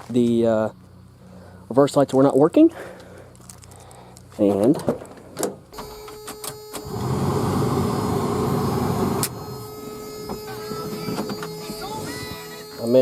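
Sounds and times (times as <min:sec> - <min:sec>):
steady tone: 0:05.8 - 0:13.0.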